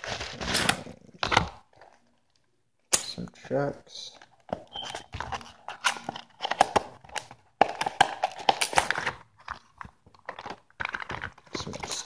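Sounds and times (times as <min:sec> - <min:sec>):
plastic wrapping crinkling: 0:08.1 - 0:12.0.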